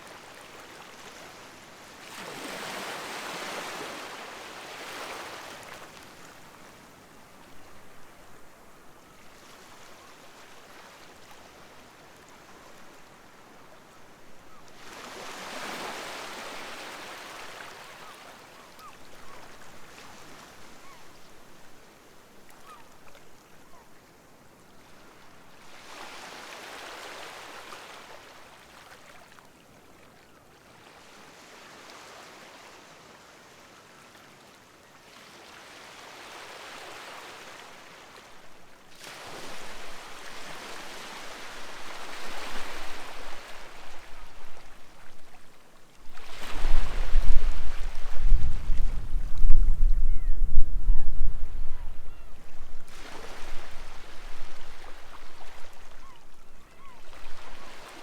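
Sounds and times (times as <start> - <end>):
faint gull calls: 17.9 - 19.5, 22.5 - 23.9, 49.9 - 52.6, 55.8 - 58.0.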